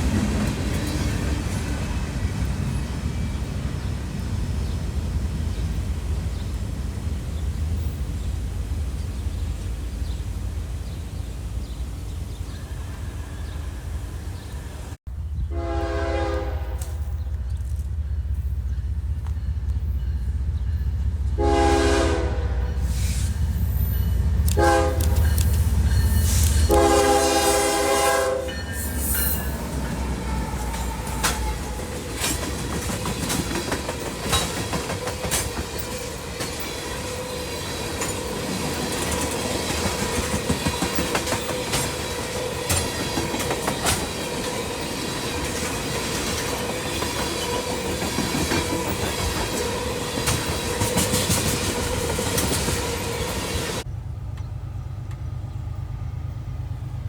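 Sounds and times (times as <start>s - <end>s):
train wheels clicking over rail joints: 0.0s - 15.0s, 16.6s - 21.4s, 22.8s - 55.8s
locomotive engine rumble: 0.0s - 57.0s
ringing whine from train wheels: 7.6s - 15.0s, 16.4s - 22.0s, 22.6s - 57.0s
locomotive horn blasts: 15.5s - 17.4s, 21.3s - 23.1s, 24.4s - 32.3s.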